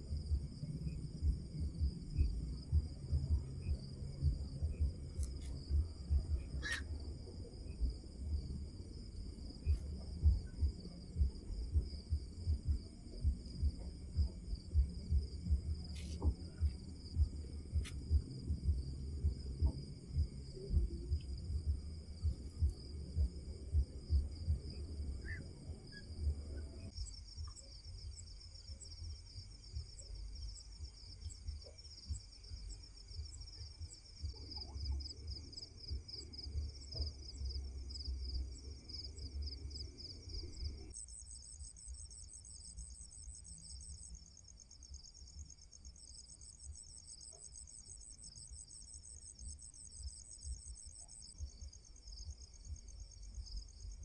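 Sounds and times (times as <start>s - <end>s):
low rumble: 0.0s - 42.0s
insects trilling: 0.0s - 54.0s.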